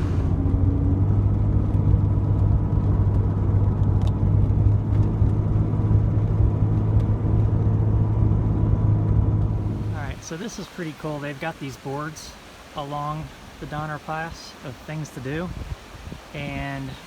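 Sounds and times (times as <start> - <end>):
engine drone: 0.0 - 11.0
road and tyre noise: 0.0 - 12.8.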